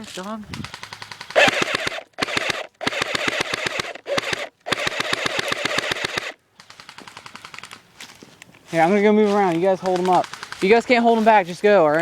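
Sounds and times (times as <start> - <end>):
airsoft guns firing: 0.6 - 7.9, 9.6 - 11.1.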